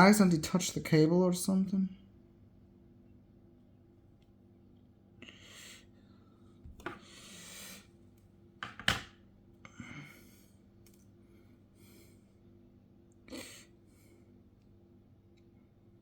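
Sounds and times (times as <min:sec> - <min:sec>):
faint steady hum: 0:00.0 - 0:16.0
clicks and knocks on work surface: 0:08.6 - 0:09.2.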